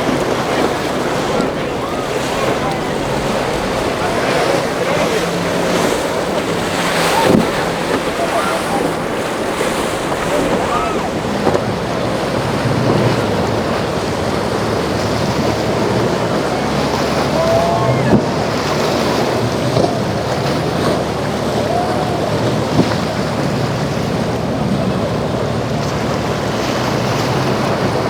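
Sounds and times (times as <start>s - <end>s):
boat engine drone: 0.0s - 28.0s
breaking surf: 0.0s - 28.0s
faint distant voices: 0.0s - 28.0s
wind buffeting microphone: 0.0s - 28.0s.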